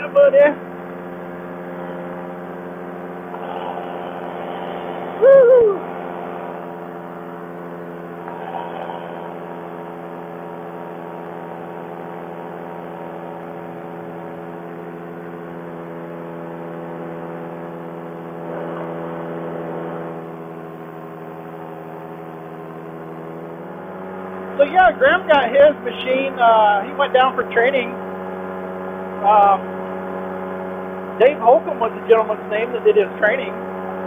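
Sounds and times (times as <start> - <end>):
paramotor engine droning: 0.0 - 34.0.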